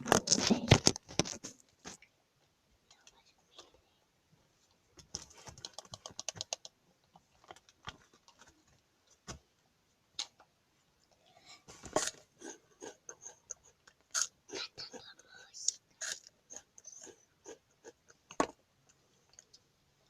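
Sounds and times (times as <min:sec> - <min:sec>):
small sharp clicks and taps: 0:05.0 - 0:08.5.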